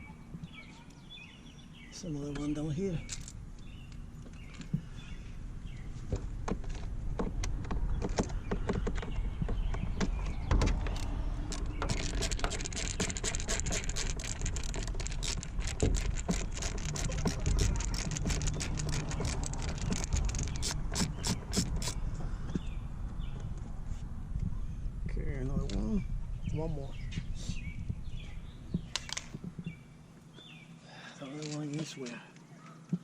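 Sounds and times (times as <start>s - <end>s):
low handling rumble: 0.0s - 30.6s
hand tools clicking on screws: 10.8s - 22.0s.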